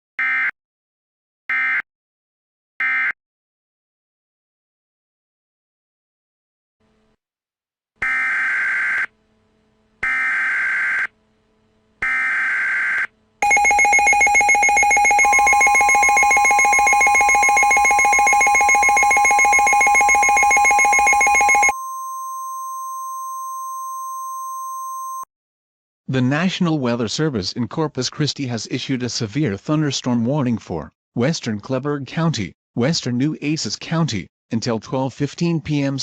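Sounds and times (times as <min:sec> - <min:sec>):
steady alarm tone: 0:12.0 - 0:22.0
pulsing attention signal: 0:13.4 - 0:21.8.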